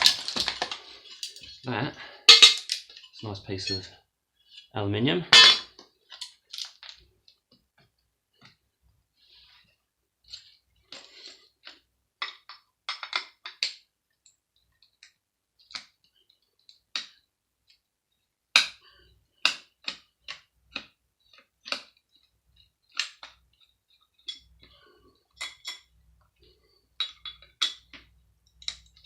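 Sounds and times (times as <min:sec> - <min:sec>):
metal parts and tools clicking: 0:00.0 - 0:01.6.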